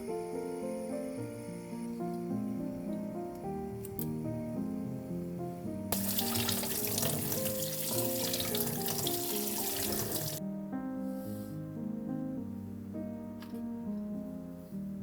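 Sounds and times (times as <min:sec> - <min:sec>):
soft background music: 0:00.0 - 0:15.0
tap water running into sink: 0:05.9 - 0:10.4.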